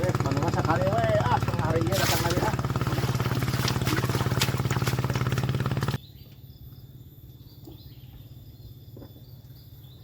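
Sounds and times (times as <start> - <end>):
small engine throbbing: 0.0 - 6.0.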